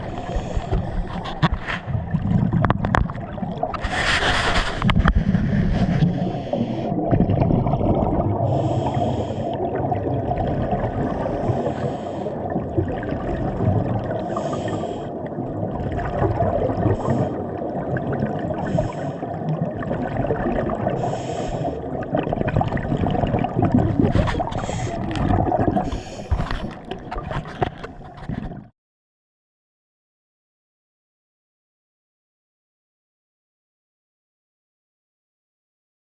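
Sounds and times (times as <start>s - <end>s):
exhaled bubbles hissing: 0.0s - 28.7s
muffled underwater rumble: 0.0s - 28.7s.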